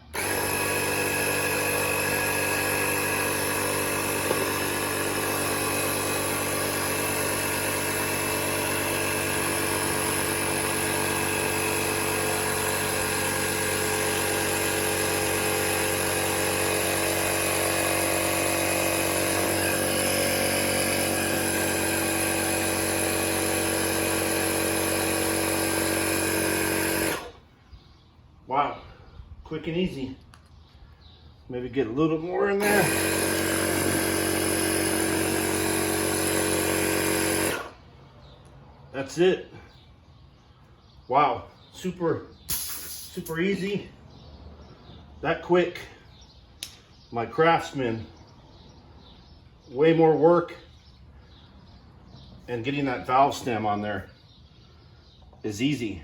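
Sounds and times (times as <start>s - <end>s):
electric air compressor running: 0.0s - 27.5s, 32.6s - 37.9s, 42.5s - 43.1s.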